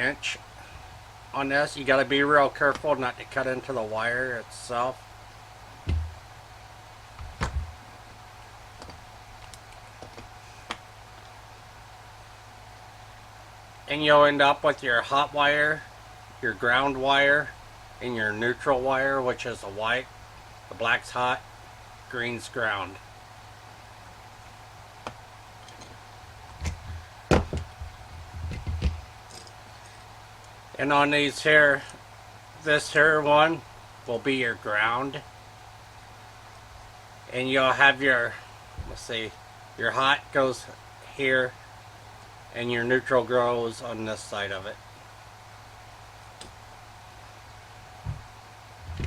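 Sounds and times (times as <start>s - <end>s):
steady low hum: 0.0s - 49.0s
cord and plug knocking: 5.9s - 6.2s, 7.2s - 7.8s, 26.6s - 29.0s.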